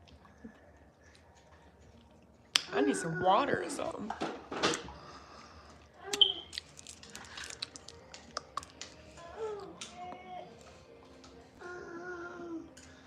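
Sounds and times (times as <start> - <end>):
faint voice: 9.1 - 10.6.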